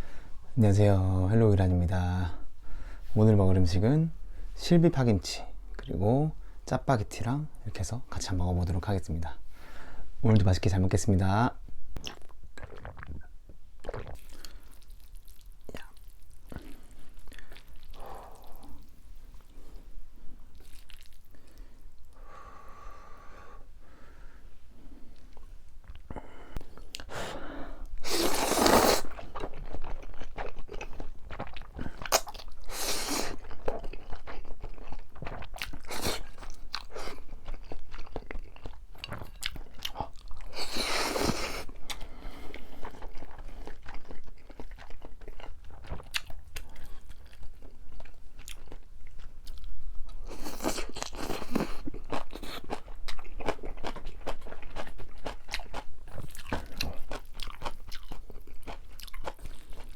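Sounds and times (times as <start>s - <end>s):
chewing and crunching: 20.5s - 21.6s, 28.1s - 59.9s.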